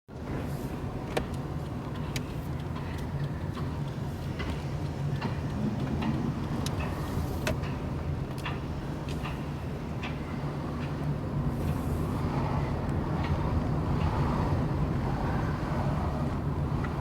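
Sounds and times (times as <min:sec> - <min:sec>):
car engine and exhaust drone: 0:00.1 - 0:17.0
sharp clicks and ticks: 0:01.2 - 0:09.4.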